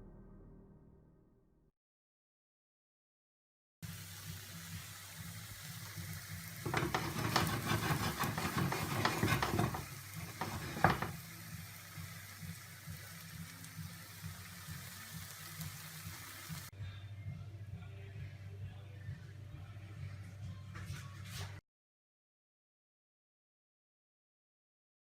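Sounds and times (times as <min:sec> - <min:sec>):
utensil scraping a dish: 0:06.7 - 0:11.2.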